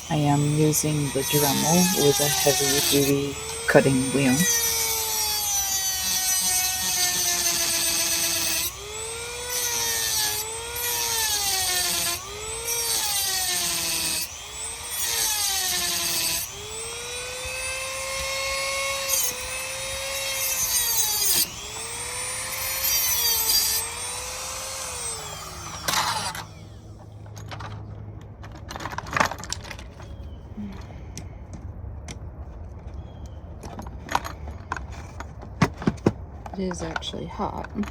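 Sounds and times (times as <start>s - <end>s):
rotary tool grinding metal: 0.0s - 27.7s.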